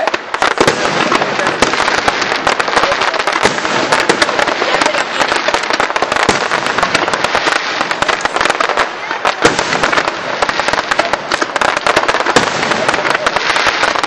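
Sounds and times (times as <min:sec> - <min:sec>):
fireworks crackling and banging: 0:00.0 - 0:14.0.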